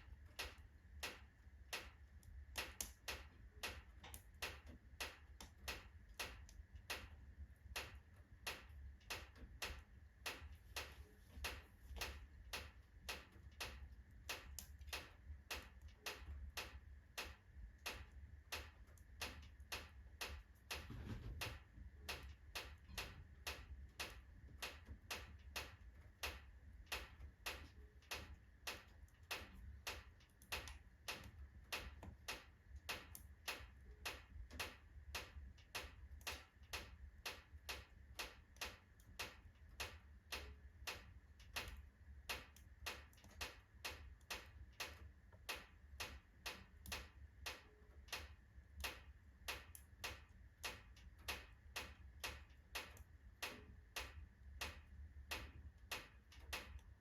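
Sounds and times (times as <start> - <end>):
clock-like ticking: 22.0 - 57.0.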